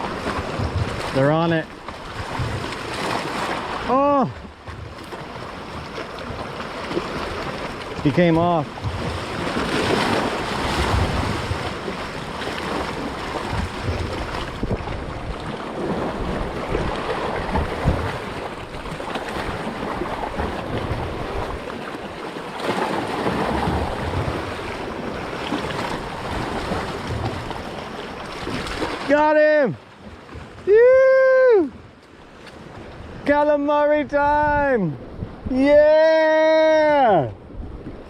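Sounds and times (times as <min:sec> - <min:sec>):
sea water washing: 0:00.0 - 0:38.0
wind buffeting microphone: 0:04.7 - 0:21.8, 0:34.0 - 0:36.0.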